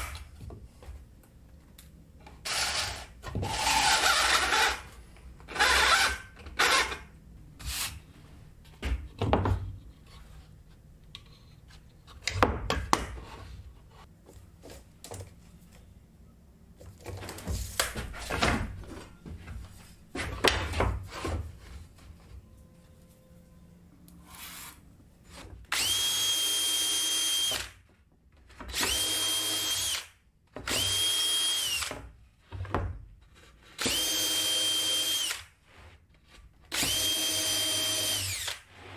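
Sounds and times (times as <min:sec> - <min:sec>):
power drill whining: 0:02.5 - 0:04.8, 0:25.7 - 0:27.7, 0:28.8 - 0:30.1, 0:30.7 - 0:31.9, 0:33.8 - 0:35.4, 0:36.7 - 0:38.6.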